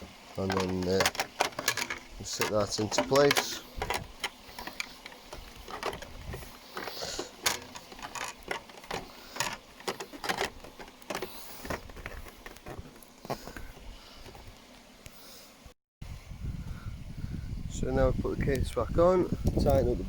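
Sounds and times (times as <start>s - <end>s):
plastic panel clicks and knocks: 0.4s - 12.9s.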